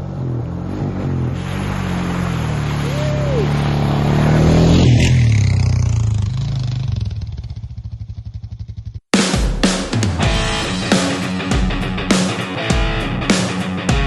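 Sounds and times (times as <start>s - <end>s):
atv engine accelerating: 0.0s - 9.0s.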